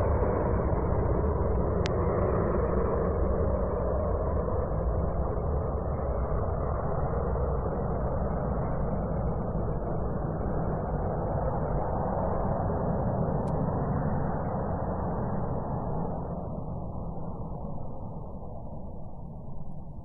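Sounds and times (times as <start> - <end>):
jet aircraft taking off: 0.0 - 20.0.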